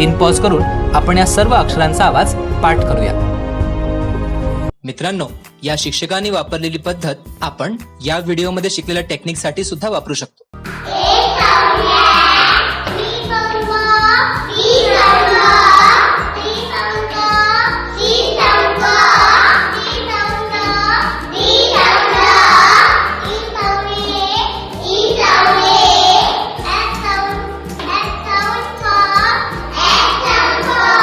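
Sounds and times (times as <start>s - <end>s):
children singing together: 10.6s - 31.0s.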